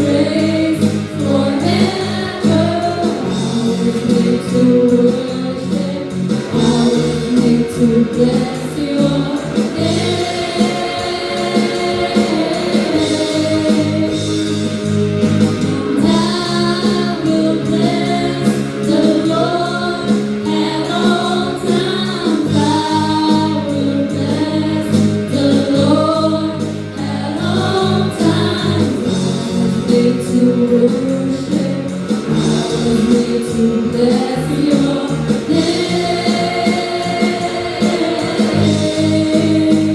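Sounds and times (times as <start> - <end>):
band accompaniment: 0.0 - 39.9
choir singing a worship song: 0.0 - 39.9.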